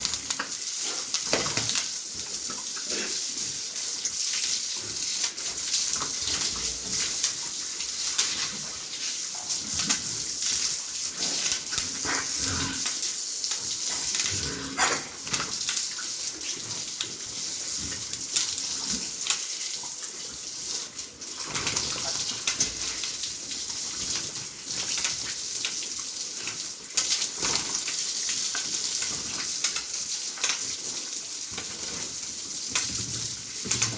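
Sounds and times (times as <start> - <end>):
water spraying: 0.0 - 33.9
pigs calling: 11.2 - 13.0, 14.1 - 15.2.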